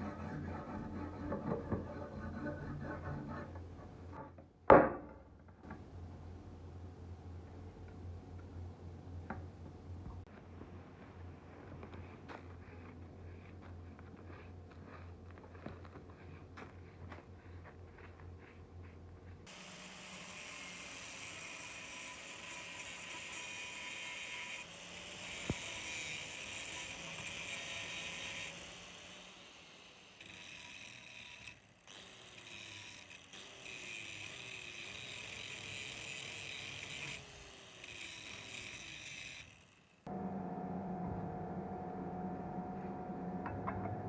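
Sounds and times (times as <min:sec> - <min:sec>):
power tool grinding metal: 0:19.5 - 0:39.8
low hum: 0:40.1 - 0:44.0.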